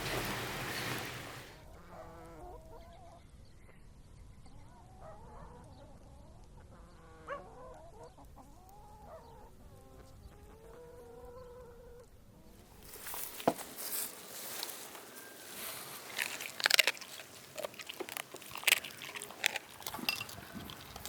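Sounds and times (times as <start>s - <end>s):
poultry clucking: 0.0s - 1.6s, 13.5s - 21.0s.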